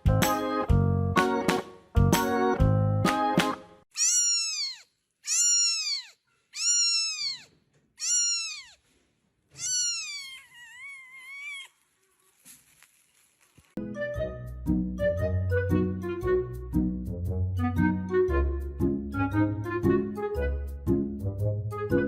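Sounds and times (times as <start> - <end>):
cat meowing: 4.0 - 8.8, 9.5 - 11.8.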